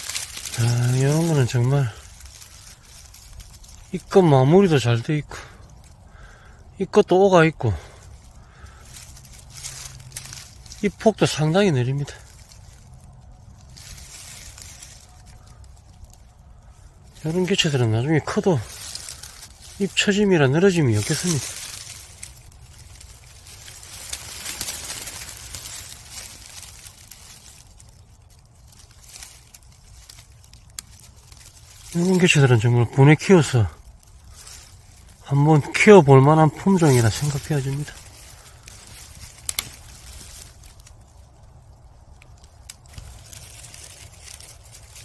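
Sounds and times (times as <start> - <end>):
dry leaves rustling: 0.0 - 45.0
low rumble: 7.6 - 32.0.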